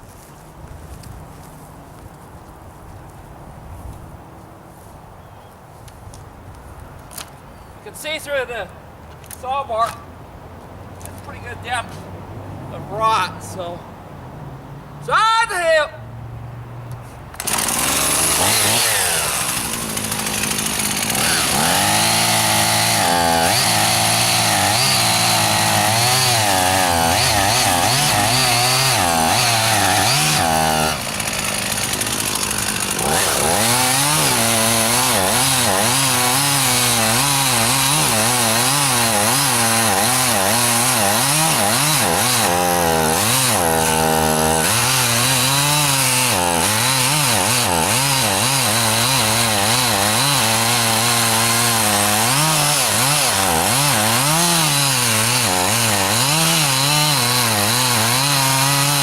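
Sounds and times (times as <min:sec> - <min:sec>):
chainsaw cutting wood: 0:17.3 - 0:59.0.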